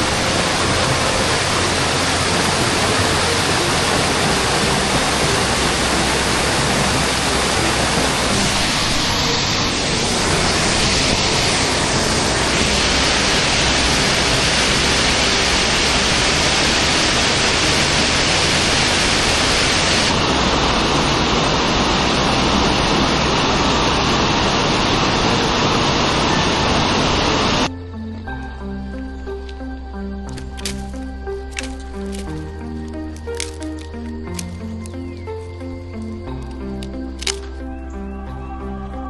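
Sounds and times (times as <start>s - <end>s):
creek water rushing: 0.0s - 27.7s.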